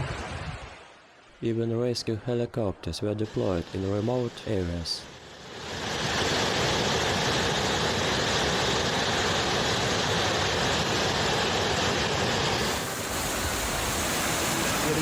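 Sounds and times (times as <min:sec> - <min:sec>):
helicopter flying overhead: 0:03.4 - 0:15.0.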